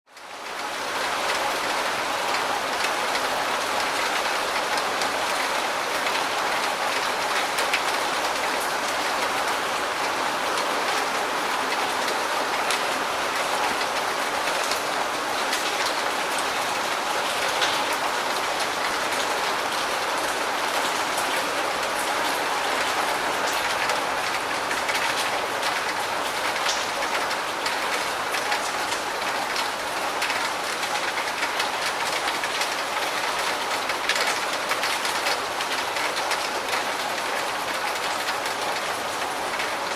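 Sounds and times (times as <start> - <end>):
rain hitting a roof: 0.1 - 39.9
raindrop ticks: 23.5 - 39.8.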